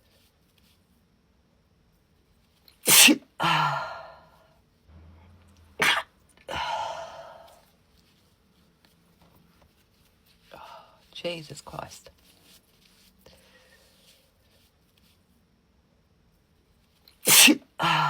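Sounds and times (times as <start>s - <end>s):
woman sneezing: 2.9s - 4.1s, 5.8s - 7.4s, 17.3s - 18.0s.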